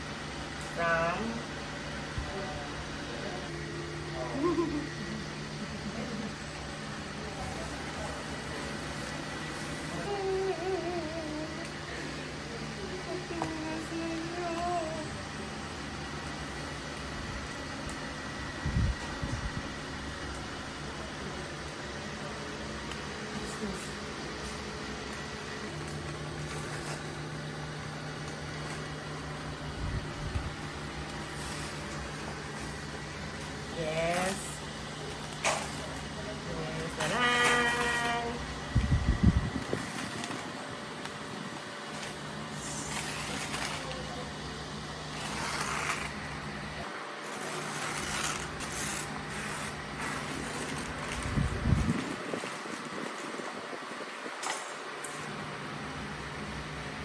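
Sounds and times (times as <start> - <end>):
low mechanical hum: 0.0 - 57.0
packaging rustling and scraping: 22.9 - 29.4, 30.5 - 38.5, 39.5 - 55.4.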